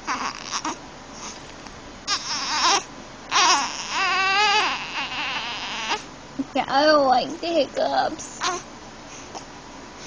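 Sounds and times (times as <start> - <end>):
baby crying: 0.0 - 1.4, 2.1 - 6.1, 8.4 - 8.7.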